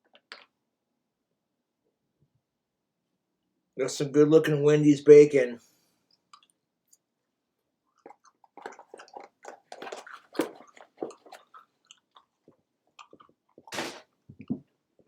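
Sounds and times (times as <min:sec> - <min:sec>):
person chewing crunchy food: 0:06.1 - 0:06.6, 0:07.8 - 0:15.0.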